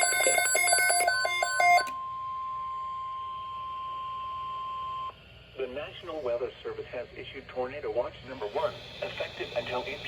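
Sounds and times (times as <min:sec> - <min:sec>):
steady alarm tone: 0:00.0 - 0:05.1.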